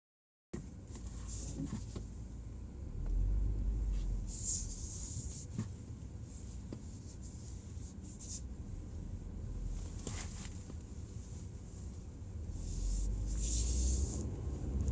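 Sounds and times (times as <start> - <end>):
car accelerating low rumble: 1.0 - 14.9.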